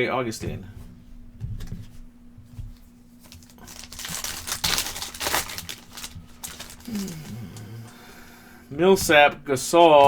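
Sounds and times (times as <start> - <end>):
foil wrapper crinkling and tearing: 3.2 - 7.6.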